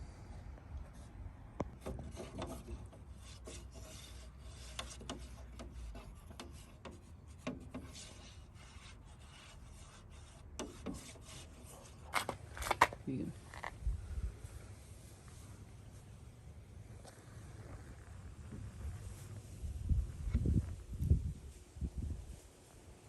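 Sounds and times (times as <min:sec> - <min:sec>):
scraping and rubbing: 0:01.7 - 0:13.8.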